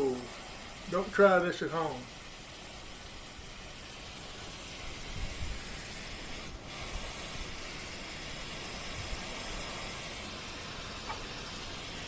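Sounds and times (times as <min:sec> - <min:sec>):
torch hissing: 0:00.0 - 0:12.0.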